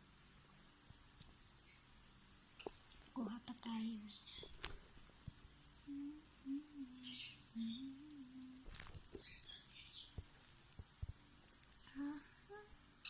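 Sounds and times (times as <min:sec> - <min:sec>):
person softly humming: 0:05.8 - 0:08.9, 0:11.8 - 0:12.8
faint clicks: 0:10.1 - 0:12.0.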